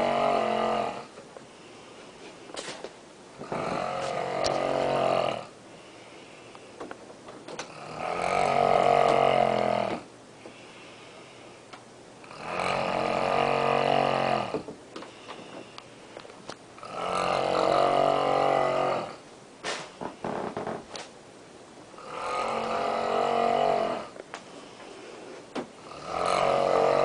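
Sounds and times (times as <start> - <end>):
woman snoring loudly: 0.0 - 1.1, 3.4 - 5.5, 7.7 - 10.0, 12.2 - 14.6, 16.8 - 19.2, 22.0 - 24.2, 25.8 - 27.0
quiet breathing: 1.4 - 2.9, 4.0 - 7.0, 10.3 - 11.8, 15.0 - 16.5, 24.0 - 26.1.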